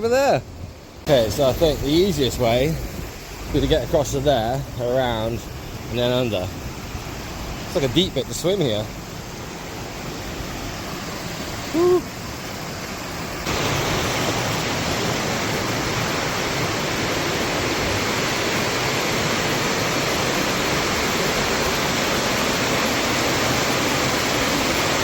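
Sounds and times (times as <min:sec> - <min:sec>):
river water rushing: 0:00.0 - 0:25.0.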